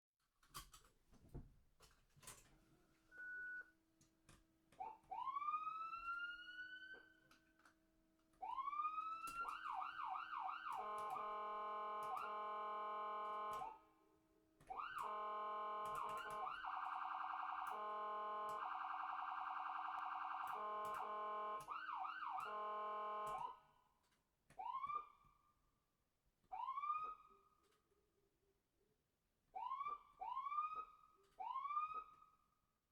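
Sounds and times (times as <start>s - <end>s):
ambulance siren: 4.8s - 7.4s, 8.4s - 13.9s, 14.7s - 23.9s, 24.6s - 25.3s, 26.5s - 27.6s, 29.6s - 32.5s.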